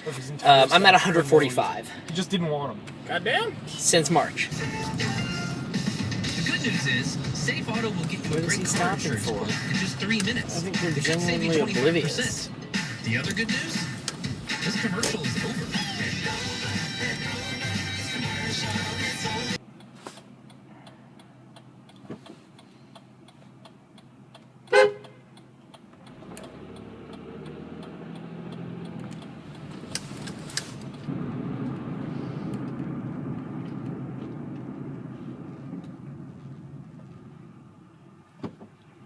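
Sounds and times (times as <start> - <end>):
car engine and road noise: 0.0 - 39.0
faint regular ticking: 19.6 - 31.1
car horn toot: 24.7 - 25.3.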